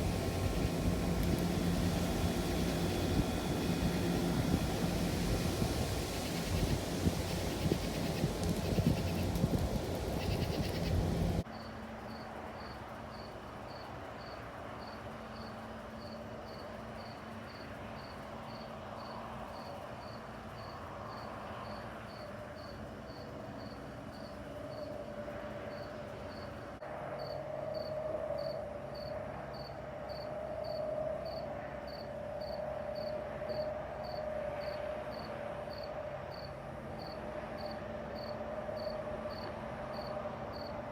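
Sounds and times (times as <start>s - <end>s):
low wavering drone: 0.0s - 11.4s
crickets chirping: 0.0s - 25.0s, 25.6s - 40.8s.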